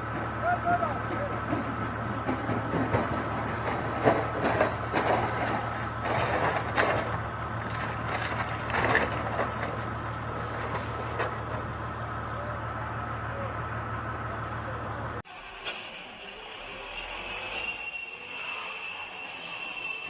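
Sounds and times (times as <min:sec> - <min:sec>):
heavy machine engine running: 0:00.0 - 0:18.2.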